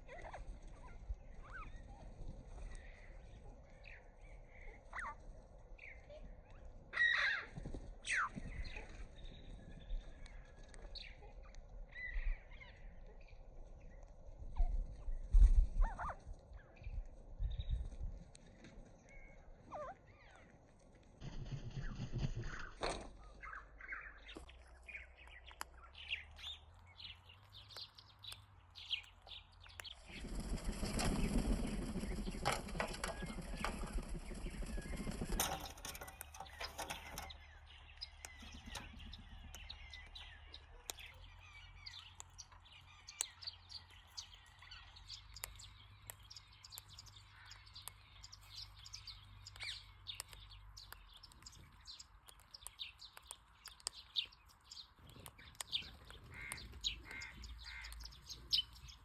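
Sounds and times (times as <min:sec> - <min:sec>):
small birds chirping: 0:00.0 - 0:59.0
flapping rustling noise: 0:21.1 - 0:23.2, 0:30.0 - 0:37.3.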